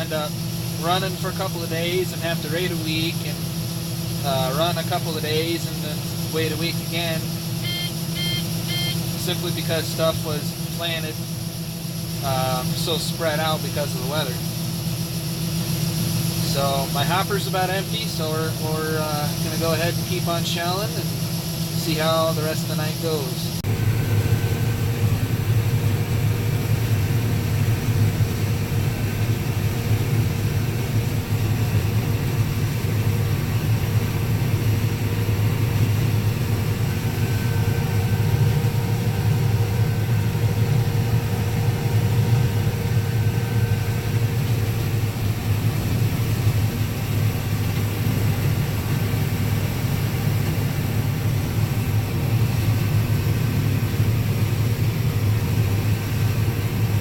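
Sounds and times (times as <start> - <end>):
combine harvester engine drone: 0.0 - 57.0
faint steady whine: 0.0 - 57.0.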